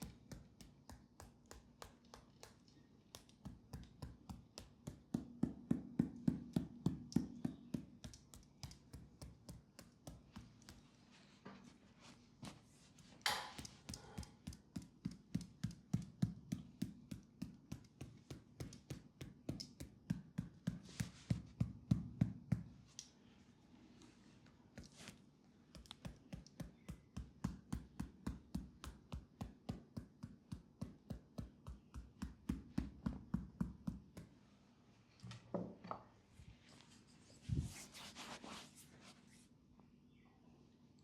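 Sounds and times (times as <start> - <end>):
hands tapping on leg: 0.0 - 10.9, 13.3 - 22.8, 25.7 - 34.3
hands rubbing skin: 20.7 - 21.9, 24.7 - 26.6, 36.8 - 39.4.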